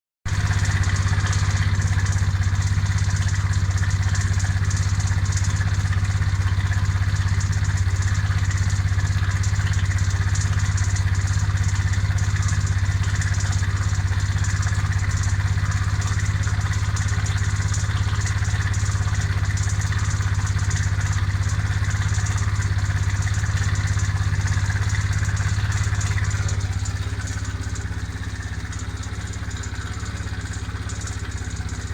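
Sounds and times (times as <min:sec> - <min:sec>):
abnormal mechanical noise: 0:00.3 - 0:31.9
scooter engine idling: 0:00.3 - 0:31.9.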